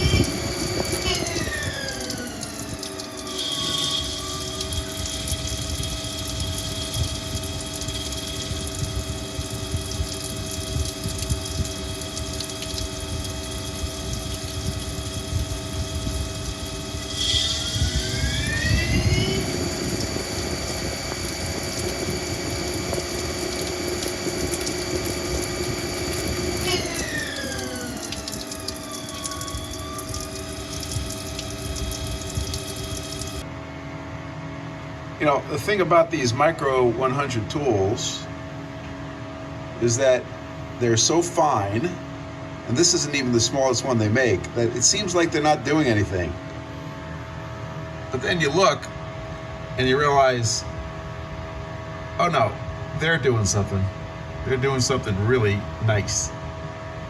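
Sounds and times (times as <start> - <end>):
lathe spindle whine: 0.0 - 11.2, 12.9 - 33.6.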